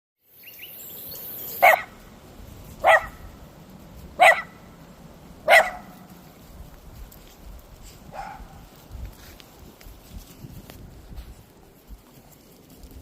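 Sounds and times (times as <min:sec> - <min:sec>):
dog barking: 0:01.6 - 0:02.0, 0:02.8 - 0:03.3, 0:04.2 - 0:04.6, 0:05.4 - 0:06.1, 0:08.1 - 0:08.6.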